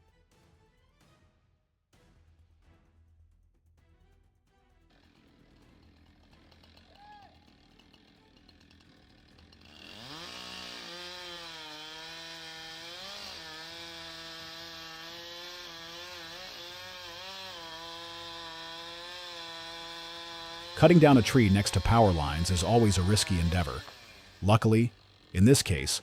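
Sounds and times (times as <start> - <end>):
chainsaw revving: 7.5 - 26.0.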